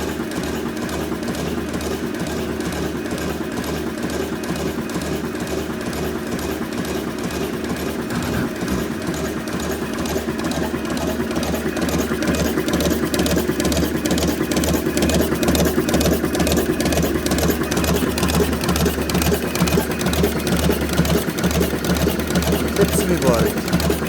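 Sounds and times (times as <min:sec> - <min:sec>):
machine rhythmic clatter: 0:00.3 - 0:24.0
low pulsing hum: 0:08.1 - 0:09.9.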